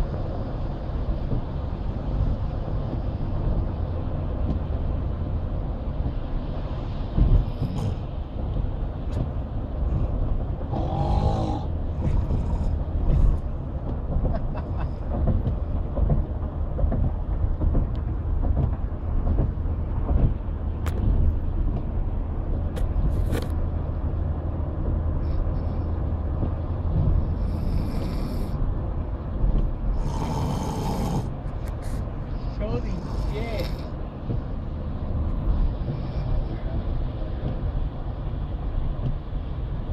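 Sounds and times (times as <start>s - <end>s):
car road rumble: 0.0s - 39.9s
man snoring: 10.7s - 12.7s, 30.0s - 31.3s, 33.0s - 33.9s.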